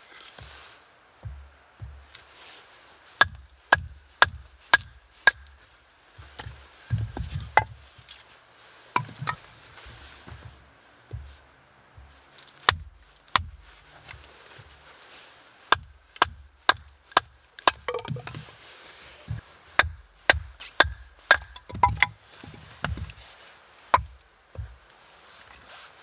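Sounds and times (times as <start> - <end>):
axe chopping wood: 3.2 - 5.6, 6.2 - 7.8, 12.0 - 14.3, 15.7 - 18.5, 19.3 - 23.2, 23.9 - 24.8.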